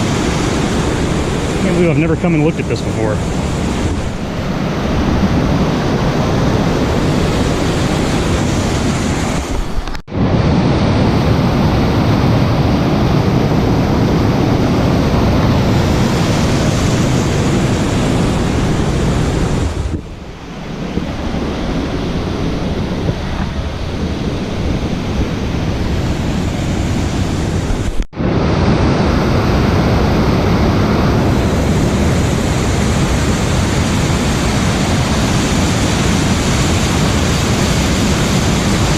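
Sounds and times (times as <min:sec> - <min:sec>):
waterfall rushing: 0:00.0 - 0:19.9, 0:30.4 - 0:38.9.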